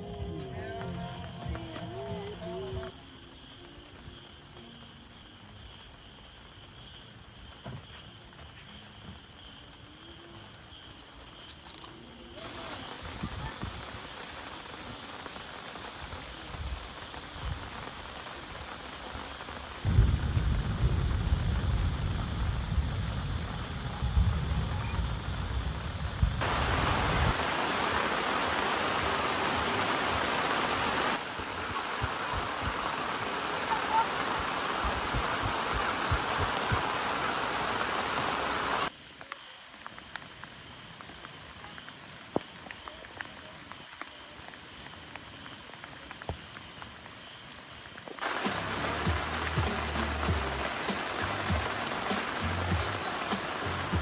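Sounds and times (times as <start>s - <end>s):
rain falling: 0.0s - 54.0s
loud low rumble: 19.9s - 27.4s.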